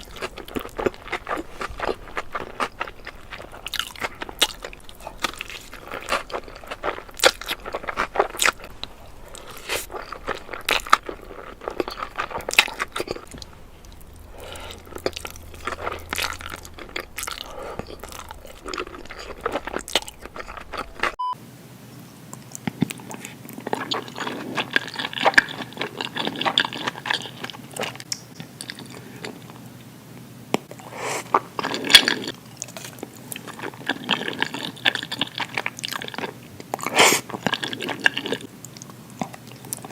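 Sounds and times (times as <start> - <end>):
person chewing crunchy food: 0.0 - 21.2, 22.6 - 29.6, 30.7 - 39.9
wet chewing: 0.0 - 21.2, 22.5 - 29.6, 30.6 - 39.9.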